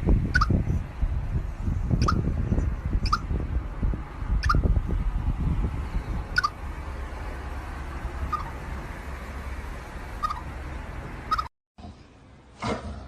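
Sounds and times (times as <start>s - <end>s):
low rumbling background: 0.0s - 12.5s
animal squeaking: 0.3s - 0.7s, 2.0s - 3.4s, 4.4s - 4.7s, 6.3s - 6.6s, 8.2s - 8.6s, 10.2s - 10.6s, 11.3s - 11.5s.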